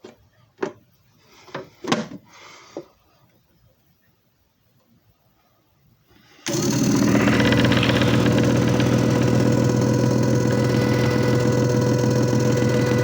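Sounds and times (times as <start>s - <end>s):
machine motor humming and whining: 6.5s - 13.0s.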